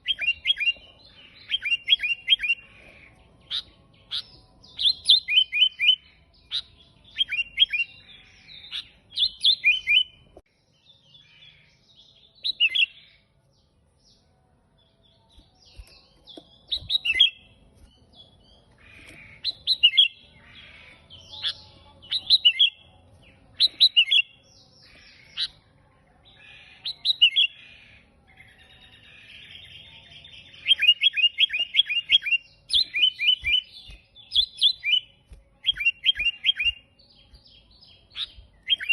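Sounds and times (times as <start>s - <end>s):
bird singing whistled notes: 0.0s - 13.2s, 14.8s - 18.7s, 19.4s - 25.6s, 26.8s - 38.9s.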